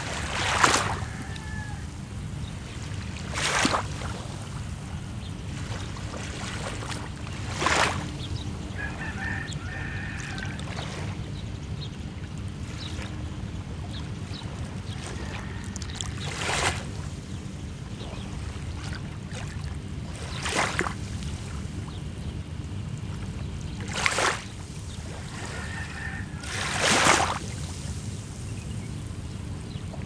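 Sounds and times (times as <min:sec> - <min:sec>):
sea waves washing onto shore: 0:00.0 - 0:30.0.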